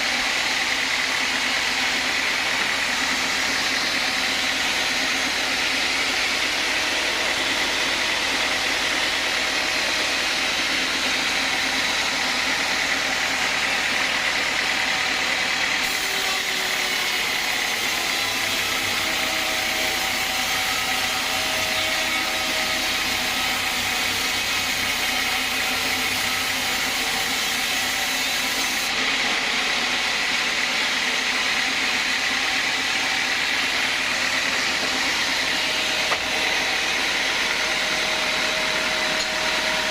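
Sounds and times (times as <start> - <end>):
band saw running: 0.0 - 39.9.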